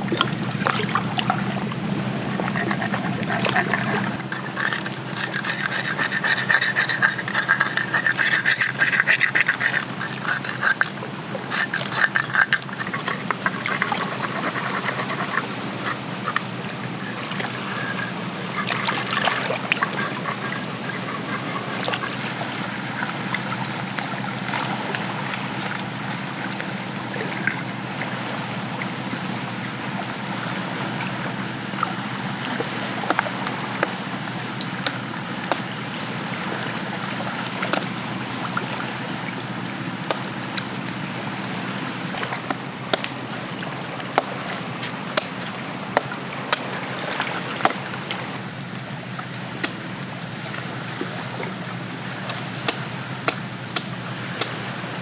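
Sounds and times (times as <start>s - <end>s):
water trickling and sloshing: 0.0s - 55.0s.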